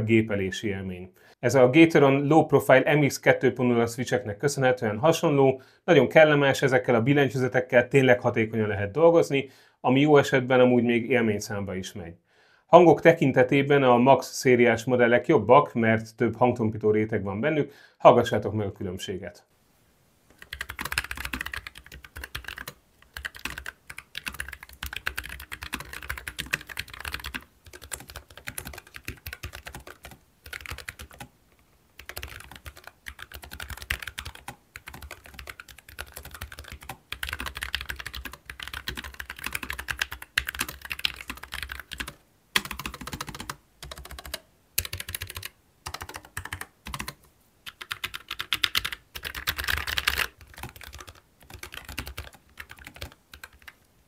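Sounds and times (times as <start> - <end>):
mechanical keyboard typing: 20.4 - 31.3, 32.0 - 53.8.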